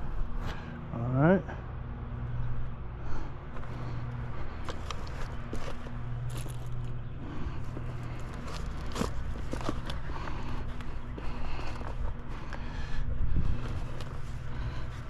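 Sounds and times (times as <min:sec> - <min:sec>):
steady low hum: 0:00.0 - 0:15.0
clicks and scrapes on shingle roof: 0:07.6 - 0:12.6.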